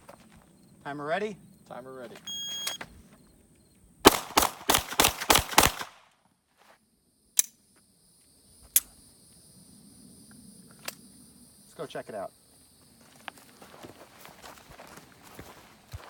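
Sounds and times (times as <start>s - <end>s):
pistol shots: 4.0s - 6.1s.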